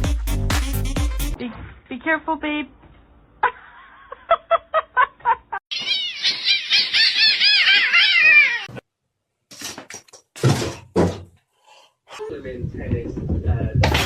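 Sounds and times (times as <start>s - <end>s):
cat meowing: 5.7s - 8.8s.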